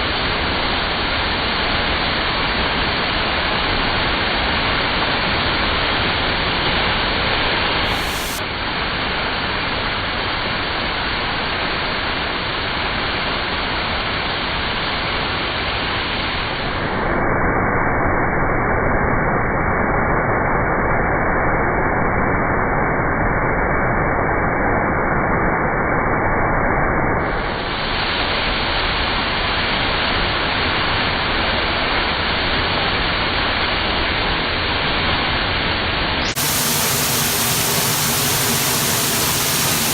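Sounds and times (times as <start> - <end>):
waterfall rushing: 7.8 - 8.4, 36.2 - 39.9.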